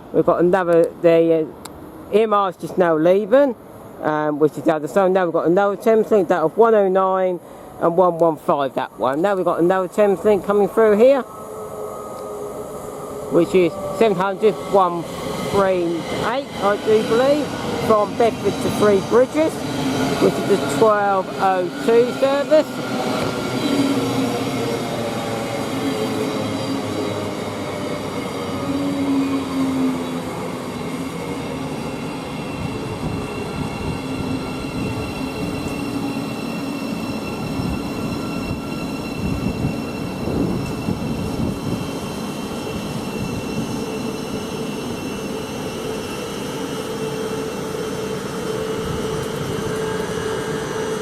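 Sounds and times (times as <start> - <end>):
steady train equipment hum: 0.0 - 51.0
electric train motor whine: 16.8 - 51.0.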